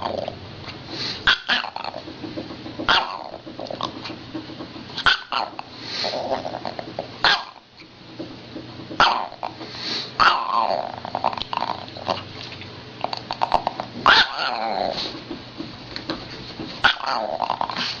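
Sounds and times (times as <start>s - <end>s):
dog growling: 0.0s - 0.4s, 1.0s - 2.2s, 2.8s - 4.2s, 5.0s - 7.6s, 9.0s - 12.3s, 13.0s - 15.2s, 16.8s - 18.0s
dog yelping: 1.2s - 2.0s, 2.9s - 3.4s, 5.0s - 5.7s, 7.2s - 7.6s, 9.0s - 9.5s, 10.2s - 11.0s, 14.0s - 15.1s, 16.8s - 17.9s.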